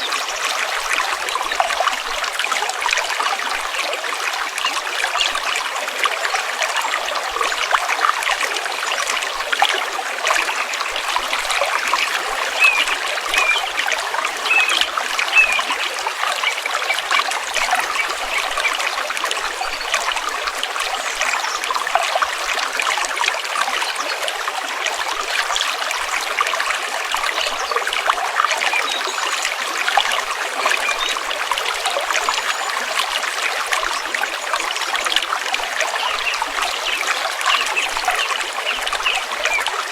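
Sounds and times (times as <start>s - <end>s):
stream water trickling and splashing: 0.0s - 39.9s.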